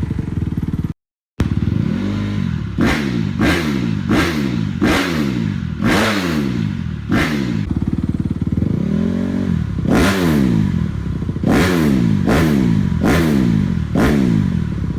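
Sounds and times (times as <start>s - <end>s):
motorcycle engine revving: 0.0s - 14.9s.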